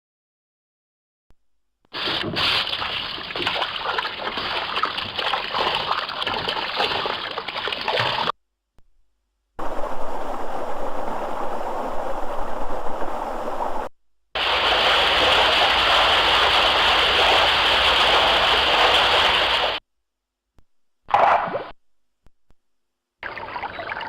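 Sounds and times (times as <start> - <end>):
hissy rush of water: 1.9 - 5.2, 9.6 - 19.8
stream rushing: 9.6 - 19.8.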